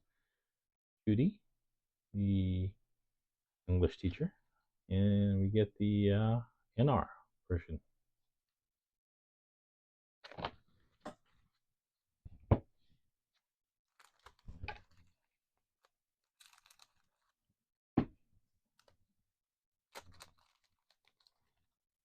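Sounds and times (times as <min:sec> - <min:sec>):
soft paper rustle: 0:13.9 - 0:17.4, 0:19.9 - 0:21.8.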